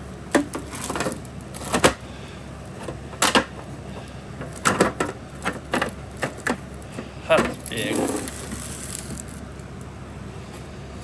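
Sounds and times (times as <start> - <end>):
packages knocking and tapping: 2.8 - 8.6.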